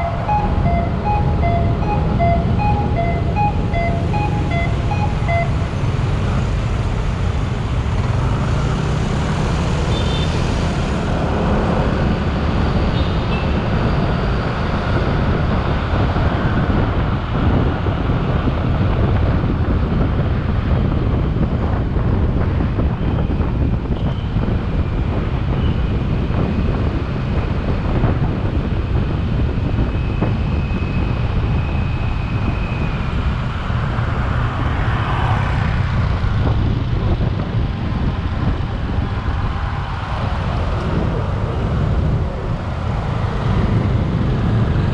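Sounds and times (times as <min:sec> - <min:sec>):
motorcycle engine: 0:00.0 - 0:12.0
road traffic: 0:00.0 - 0:44.9
wind on microphone: 0:00.0 - 0:44.9.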